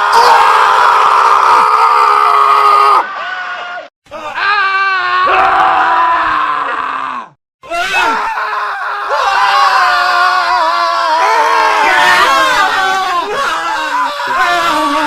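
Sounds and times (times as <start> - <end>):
men screaming: 0.0 - 15.0.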